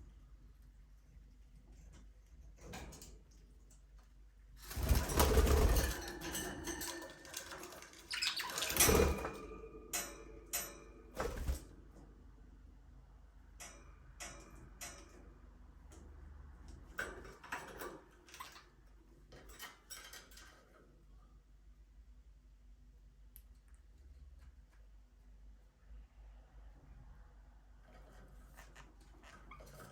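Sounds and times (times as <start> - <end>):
birds fluttering in cage: 4.6 - 12.0, 27.8 - 29.9.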